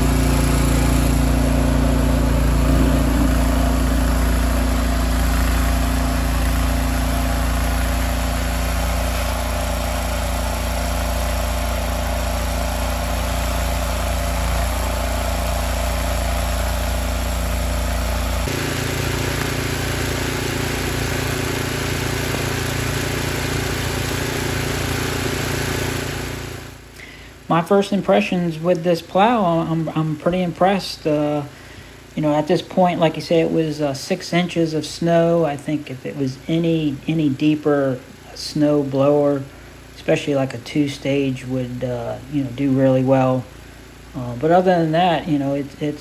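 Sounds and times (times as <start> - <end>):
mower engine running: 0.0 - 27.7.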